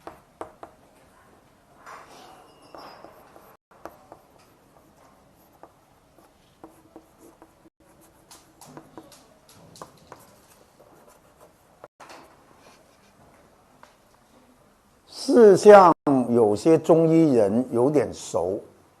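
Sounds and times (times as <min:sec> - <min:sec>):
pen scratching while writing: 0:02.7 - 0:11.7.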